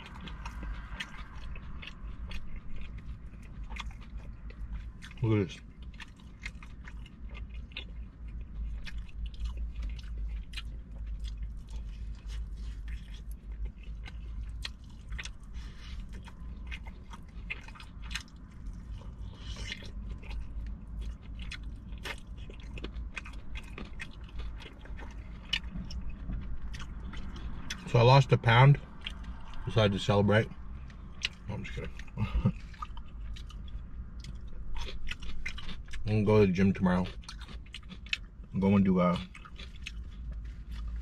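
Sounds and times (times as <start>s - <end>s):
chewing crunchy fried food: 0.0s - 41.0s
steady low hum: 0.0s - 41.0s.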